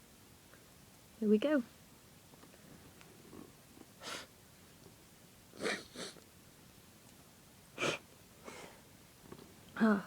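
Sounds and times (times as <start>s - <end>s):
person sniffing hard: 4.0s - 4.3s, 5.6s - 6.2s, 7.8s - 8.8s
faint breath: 7.8s - 8.9s.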